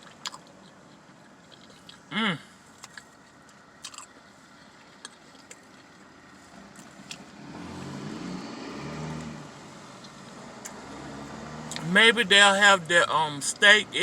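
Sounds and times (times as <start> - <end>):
vehicle engine passing by: 6.4 - 11.9.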